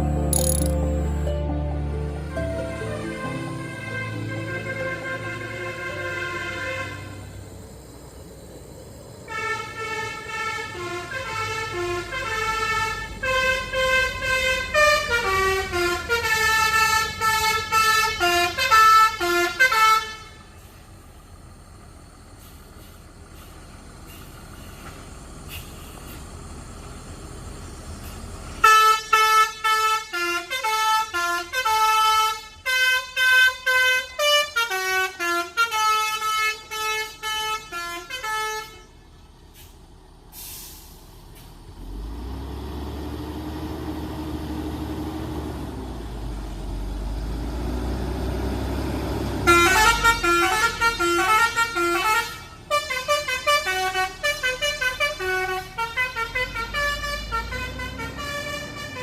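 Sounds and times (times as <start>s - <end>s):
multi-tone bus horn melody: 0.0s - 7.6s, 9.3s - 20.8s, 28.6s - 39.3s, 48.3s - 59.0s
bus engine rumbling: 0.0s - 59.0s.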